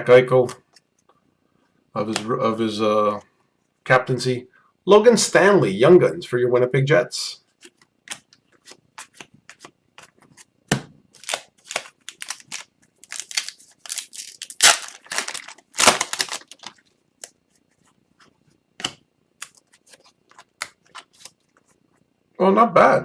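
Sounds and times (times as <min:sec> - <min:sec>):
cards sliding and snapping: 0:11.2 - 0:16.4
foil wrappers crinkling: 0:11.2 - 0:17.4.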